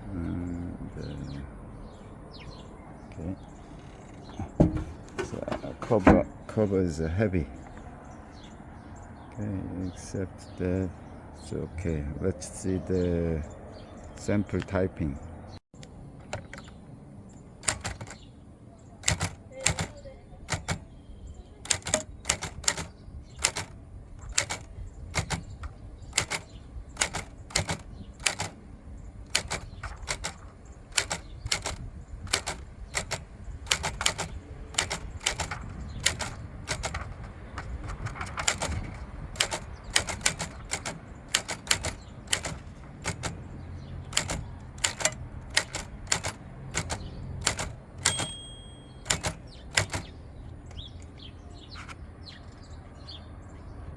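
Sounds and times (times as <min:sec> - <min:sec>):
typewriter key strikes: 0:17.6 - 0:18.3, 0:19.0 - 0:20.9, 0:21.6 - 0:28.6, 0:29.3 - 0:43.4, 0:44.1 - 0:50.1
typewriter bell ring: 0:19.0 - 0:20.8, 0:21.7 - 0:23.7, 0:24.3 - 0:25.4, 0:31.0 - 0:37.0, 0:44.1 - 0:50.1.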